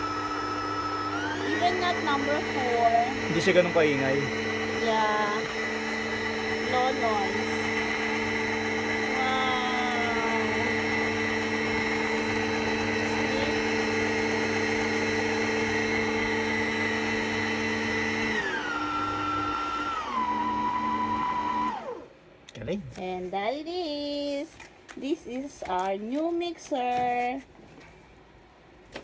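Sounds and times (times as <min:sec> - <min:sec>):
stand mixer motor whine: 0:00.0 - 0:22.1.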